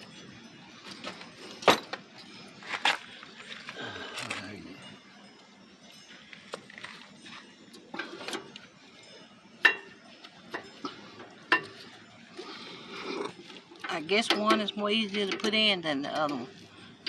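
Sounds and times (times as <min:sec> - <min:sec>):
metal clinks of tools: 0:00.0 - 0:12.3.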